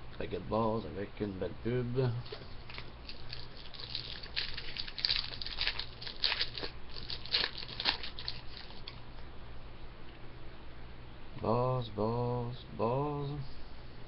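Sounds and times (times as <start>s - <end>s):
low electrical hum: 0.0s - 14.0s
wrapper and cards crinkling: 2.2s - 9.0s.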